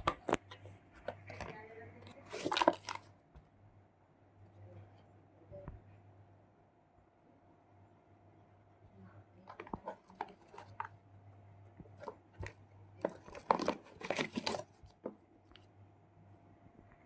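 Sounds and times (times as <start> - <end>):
packaging rustling: 2.1 - 3.1, 9.5 - 10.9, 11.9 - 15.1.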